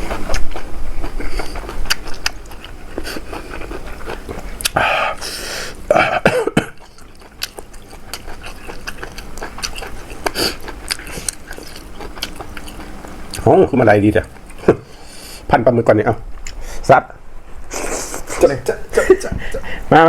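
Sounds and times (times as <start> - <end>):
crunchy chewing: 0.0 - 15.2
person coughing: 5.9 - 6.8.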